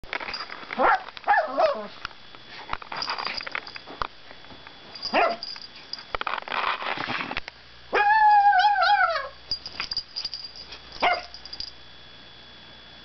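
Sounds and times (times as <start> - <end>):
dog yelping barks: 0.8 - 1.9, 5.1 - 5.4, 7.9 - 9.4, 11.0 - 11.4.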